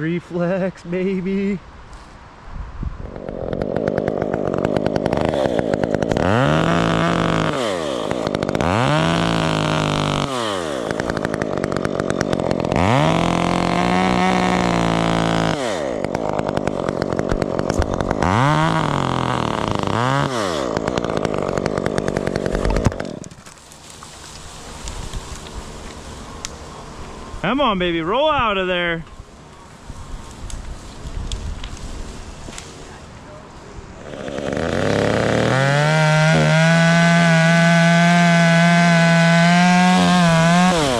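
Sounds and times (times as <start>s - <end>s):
chainsaw revving: 3.0s - 27.6s, 34.0s - 40.9s.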